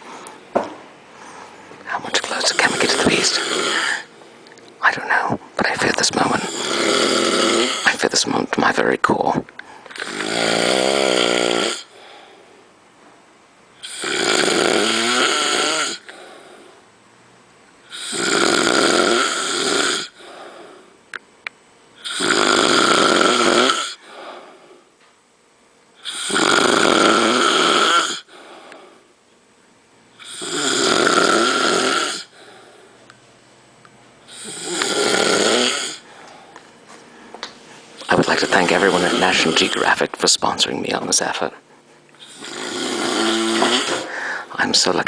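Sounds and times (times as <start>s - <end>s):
quiet breathing: 1.1s - 6.6s, 11.8s - 12.7s, 16.0s - 16.8s, 20.1s - 21.0s, 24.0s - 24.9s, 28.2s - 29.1s, 32.2s - 33.1s, 36.0s - 39.9s, 44.0s - 44.6s
man snoring loudly: 2.2s - 4.1s, 6.2s - 8.0s, 10.0s - 12.2s, 13.8s - 16.4s, 17.9s - 20.8s, 22.0s - 24.2s, 26.0s - 28.6s, 30.2s - 32.5s, 34.3s - 36.1s, 38.0s - 40.0s, 42.2s - 44.3s.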